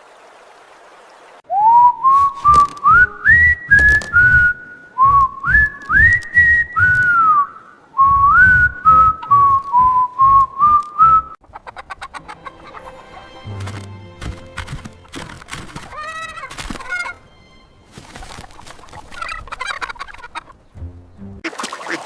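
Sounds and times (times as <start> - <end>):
person whistling a tune: 1.5 - 11.4.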